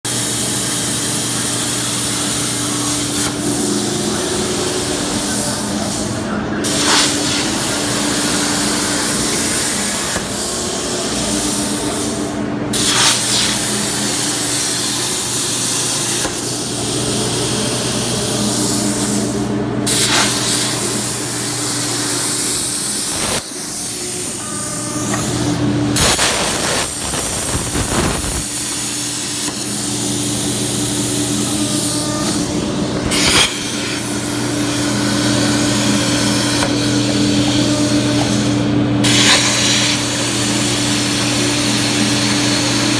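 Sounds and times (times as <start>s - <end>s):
cutting torch hissing: 19.9s - 23.5s, 26.0s - 32.3s.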